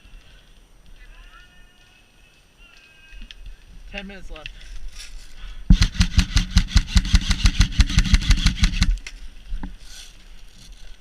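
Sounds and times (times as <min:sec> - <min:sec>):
airsoft rifle full-auto burst: 0:05.7 - 0:09.0
gearbox motor buzz: 0:05.8 - 0:08.9.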